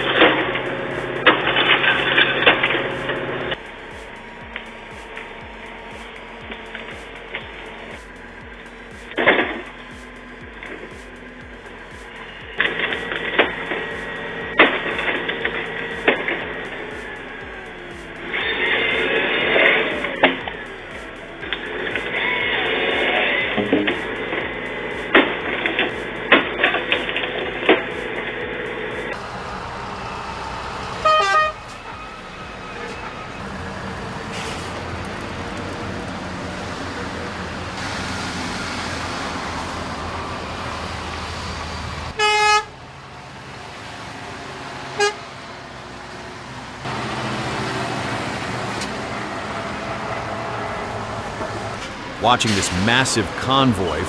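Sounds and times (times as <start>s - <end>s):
truck horns tooting: 0.0s - 10.7s, 12.5s - 33.6s, 42.2s - 42.7s, 44.9s - 45.3s, 46.9s - 54.0s
heavy trucks driving past: 0.0s - 54.0s.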